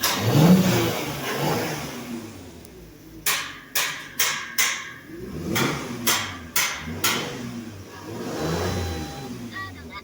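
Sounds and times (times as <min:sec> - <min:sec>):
sharp knocks: 0:03.2 - 0:07.5.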